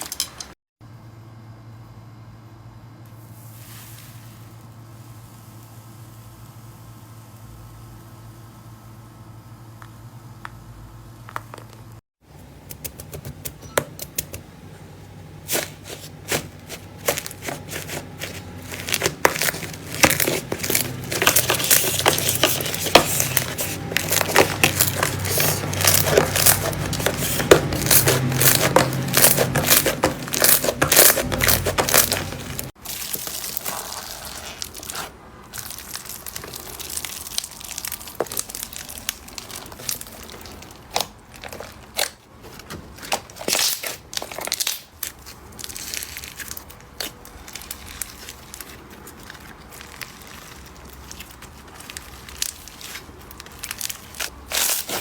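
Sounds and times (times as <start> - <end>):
slime crackling and popping: 16.3 - 42.2, 43.2 - 55.0.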